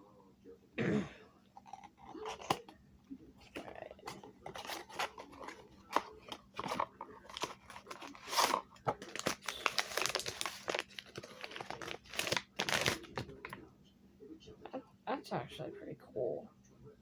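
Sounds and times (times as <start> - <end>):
packaging crinkling and tearing: 3.5 - 13.6.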